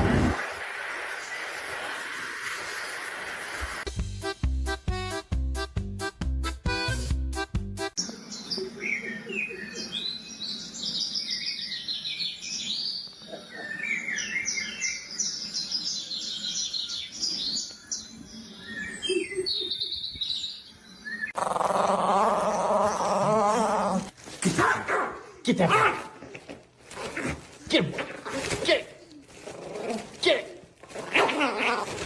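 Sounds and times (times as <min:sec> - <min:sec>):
dog whining: 0:21.4 - 0:24.8, 0:30.9 - 0:32.0.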